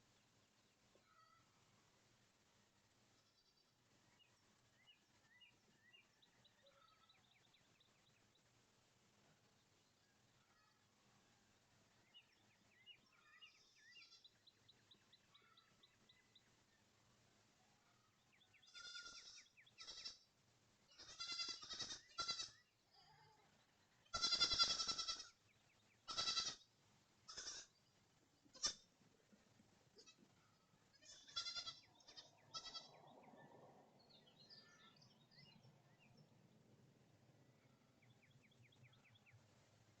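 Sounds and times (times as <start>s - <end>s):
faint bird chirps: 0.9s - 1.6s, 12.0s - 16.8s, 17.8s - 20.3s
goats bleating: 18.7s - 20.1s, 21.0s - 22.6s, 24.1s - 25.3s, 26.1s - 26.6s, 27.3s - 27.7s, 31.0s - 32.9s.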